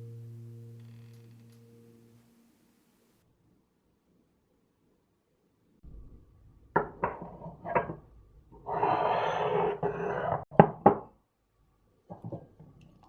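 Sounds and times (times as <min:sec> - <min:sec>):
objects knocking on hard surface: 0:12.1 - 0:12.5.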